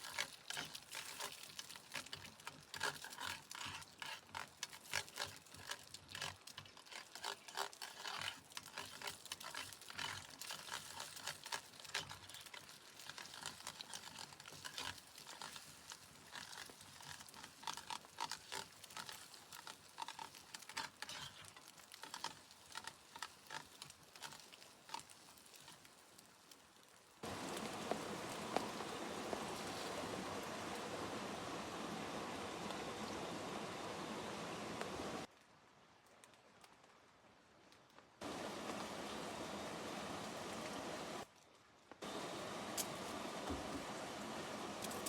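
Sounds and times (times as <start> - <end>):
clicks and rustles: 0.0 - 26.0
rain hissing: 27.2 - 35.3, 38.2 - 41.2, 42.0 - 45.0.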